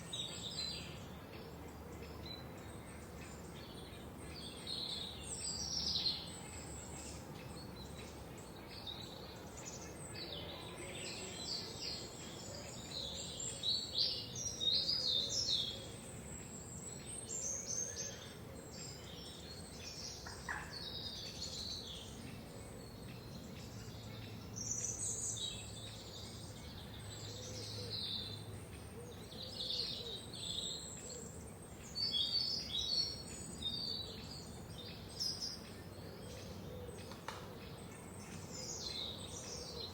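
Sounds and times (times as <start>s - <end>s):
songbirds chirping and singing: 0.0s - 39.9s.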